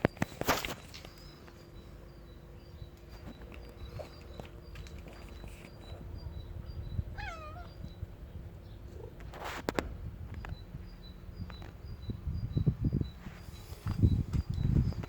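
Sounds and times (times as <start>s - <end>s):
kitten meowing: 7.1s - 7.8s.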